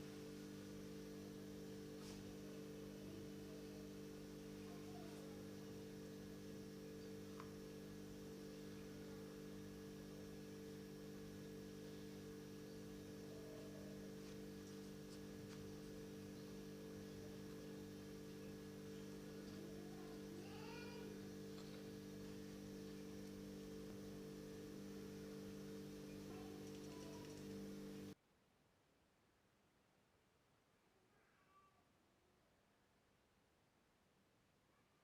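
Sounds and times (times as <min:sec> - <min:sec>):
steady low hum: 0:00.0 - 0:28.2
faint clicks: 0:26.6 - 0:27.6.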